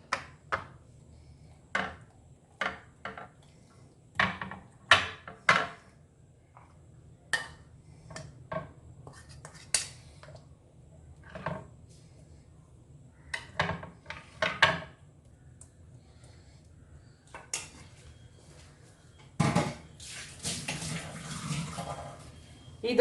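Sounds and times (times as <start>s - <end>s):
spoon scraping a dish: 9.0s - 10.4s.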